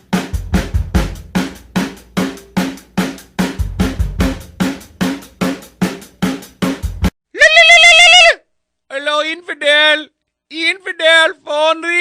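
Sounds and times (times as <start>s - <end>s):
electronic drum beat: 0.0s - 7.1s.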